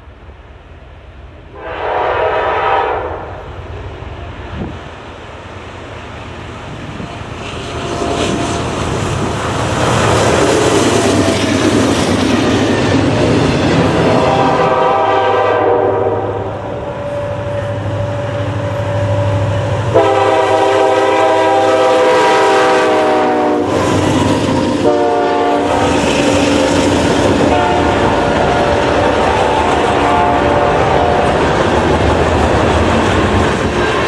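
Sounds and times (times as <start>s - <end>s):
locomotive air horn blasts: 1.5s - 3.4s, 14.0s - 18.6s, 19.2s - 26.0s, 27.3s - 31.4s
locomotive engine drone: 3.1s - 34.0s
wheels clattering on rail: 25.8s - 34.0s.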